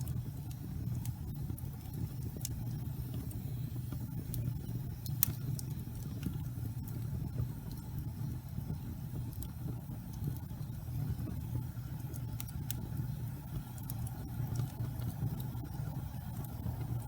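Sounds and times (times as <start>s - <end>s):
fire crackling and popping: 0.0s - 17.0s
fire rumbling: 0.0s - 17.0s.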